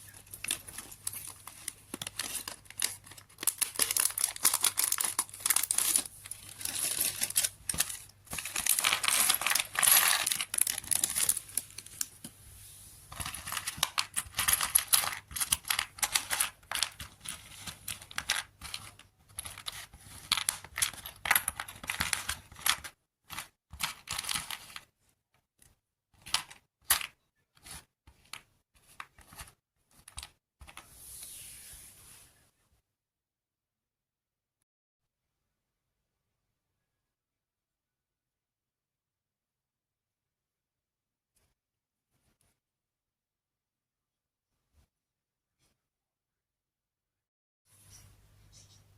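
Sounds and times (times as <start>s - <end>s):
packaging crinkling and rustling: 0.0s - 12.3s, 13.1s - 24.8s.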